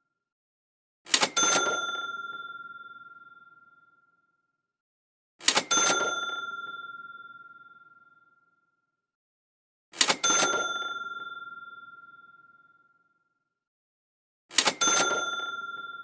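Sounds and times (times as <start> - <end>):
bell ding: 1.4 - 3.8, 5.7 - 8.5, 10.2 - 12.9, 14.8 - 16.0.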